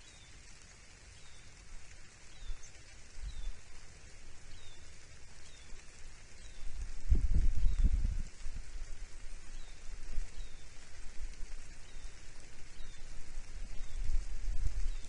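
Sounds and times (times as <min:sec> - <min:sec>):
small bird chirping: 0:00.0 - 0:00.4, 0:02.3 - 0:03.8, 0:04.4 - 0:06.8
steady hiss: 0:00.0 - 0:15.0
wind rumble on microphone: 0:02.3 - 0:15.0.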